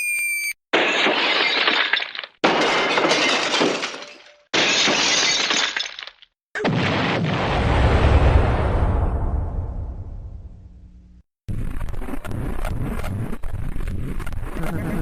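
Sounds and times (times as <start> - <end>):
glass-breaking crash effects: 0.8 - 7.2
explosion with low rumble: 6.6 - 10.8.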